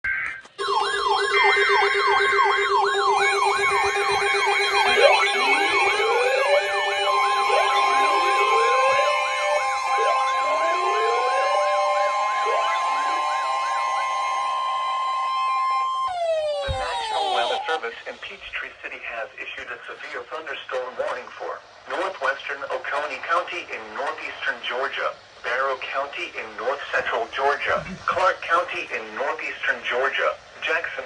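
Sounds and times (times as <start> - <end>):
steady siren tones: 0.3 - 17.8
wailing siren: 0.5 - 17.8
fast yelping siren: 0.6 - 17.8.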